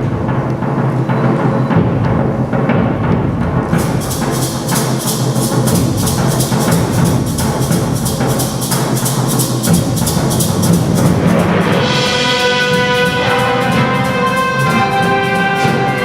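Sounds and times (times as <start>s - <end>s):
drum strokes and timpani: 0.0s - 16.0s
concert band playing: 3.7s - 16.0s.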